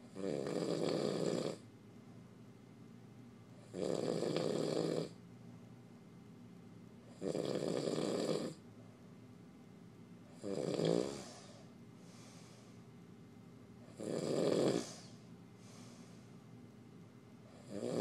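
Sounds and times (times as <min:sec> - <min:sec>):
man snoring: 0:00.0 - 0:01.6, 0:03.6 - 0:05.2, 0:07.1 - 0:08.6, 0:10.4 - 0:11.6, 0:13.9 - 0:15.2, 0:17.6 - 0:18.0
faint breath: 0:11.1 - 0:13.0, 0:14.8 - 0:16.6.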